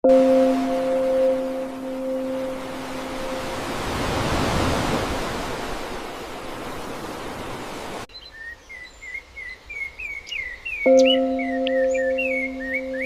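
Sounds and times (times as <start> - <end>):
small bird chirping: 8.1 - 13.0.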